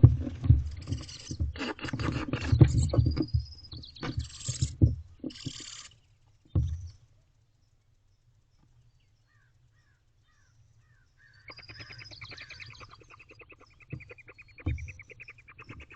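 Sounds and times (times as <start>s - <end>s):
scuffling thumps and clicks: 0.0s - 5.9s, 6.5s - 7.0s
owlet hissing calls: 4.0s - 6.0s, 11.2s - 15.9s.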